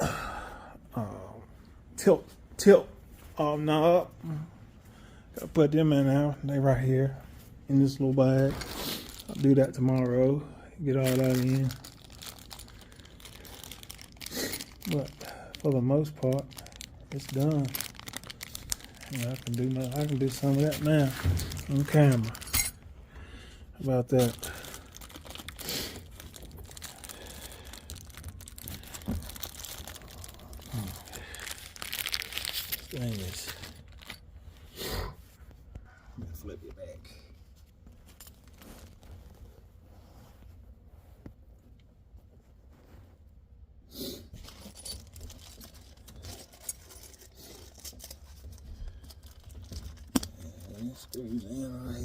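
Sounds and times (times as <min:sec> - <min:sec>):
plastic bag crinkling: 0:07.8 - 0:22.6, 0:23.8 - 0:34.6, 0:44.4 - 0:52.0
small metal parts clinking: 0:19.9 - 0:22.8, 0:44.4 - 0:51.2.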